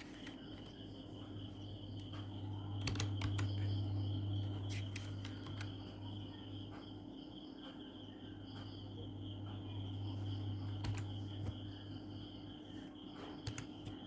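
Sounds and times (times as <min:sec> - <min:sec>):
low electrical hum: 0:00.0 - 0:14.0
computer keyboard typing: 0:01.6 - 0:03.8, 0:04.7 - 0:05.9, 0:10.6 - 0:11.6, 0:13.2 - 0:14.0.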